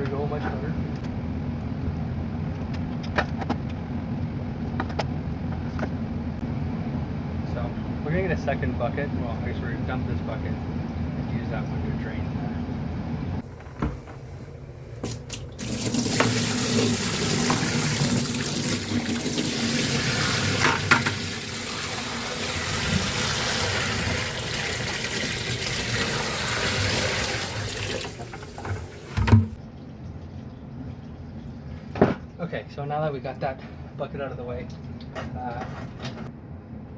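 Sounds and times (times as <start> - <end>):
water pouring down a drain: 15.0 - 29.6.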